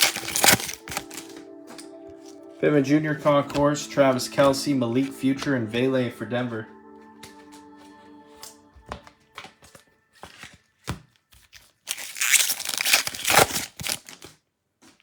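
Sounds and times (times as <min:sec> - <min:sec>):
wrapper tearing: 0:00.0 - 0:01.2, 0:11.9 - 0:14.4.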